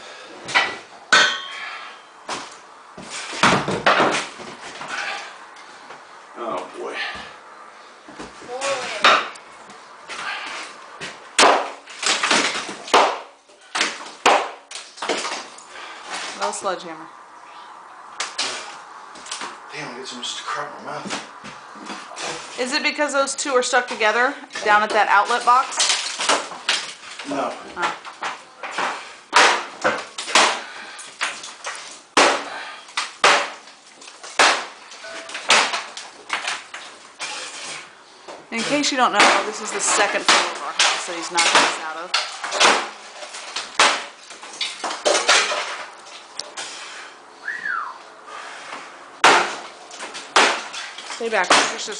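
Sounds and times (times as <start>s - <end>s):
sledgehammer striking wood: 0.5s - 5.2s, 8.6s - 9.4s, 10.1s - 15.5s, 28.2s - 37.6s, 38.6s - 45.9s, 49.2s - 51.9s
wood splintering: 8.4s - 9.4s, 10.1s - 16.6s, 23.8s - 47.2s, 48.4s - 51.9s
debris clattering: 10.1s - 16.7s, 21.8s - 46.7s, 49.2s - 51.9s.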